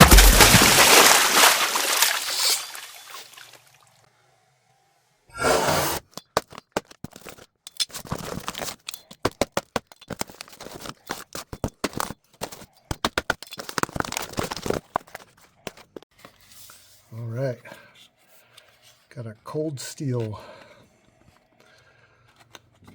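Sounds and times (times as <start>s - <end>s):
packaging crackling and scraping: 5.7s - 16.8s.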